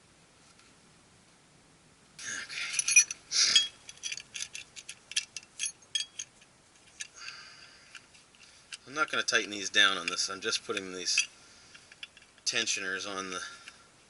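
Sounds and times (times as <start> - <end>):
metal clamps scraping and rattling: 2.4 - 13.8
sharp metal clinks: 2.6 - 6.3.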